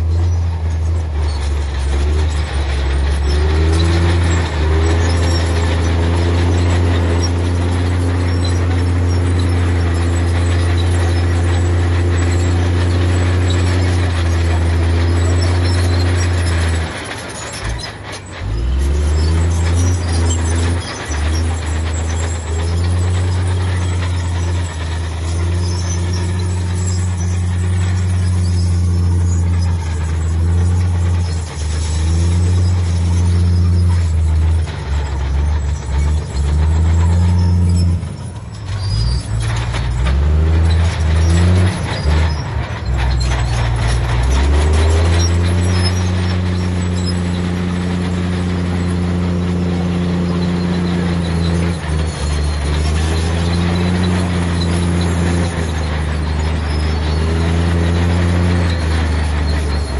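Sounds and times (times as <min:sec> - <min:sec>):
heavy diesel engine under load: 0:00.0 - 0:59.9.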